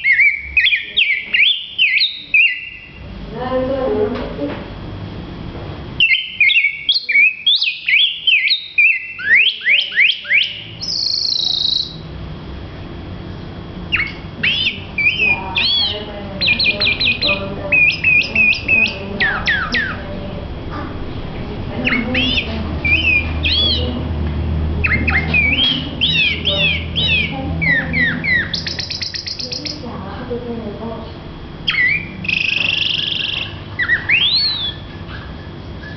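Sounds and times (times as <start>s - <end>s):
songbird whistling song: 0.0s - 3.0s, 6.0s - 12.1s, 13.9s - 20.1s, 21.8s - 24.0s, 24.8s - 29.8s, 31.6s - 35.9s.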